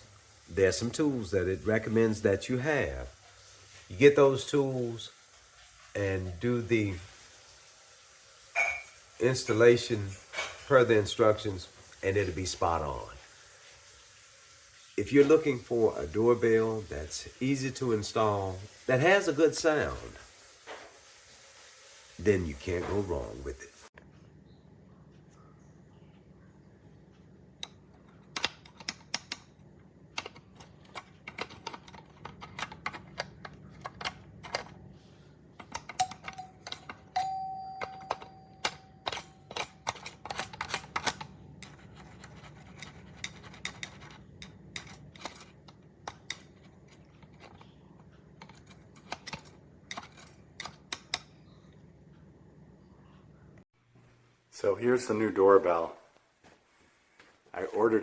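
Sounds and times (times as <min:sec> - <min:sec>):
ringing tone: 0:36.0 - 0:39.5.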